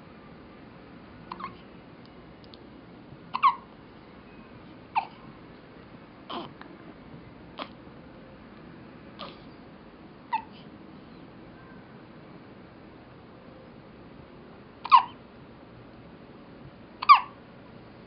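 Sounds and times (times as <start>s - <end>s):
baby hiccuping: 1.3s - 1.6s, 3.3s - 3.7s, 4.9s - 5.2s, 6.3s - 6.6s, 7.6s - 7.8s, 9.2s - 9.5s, 14.8s - 15.2s, 17.0s - 17.4s.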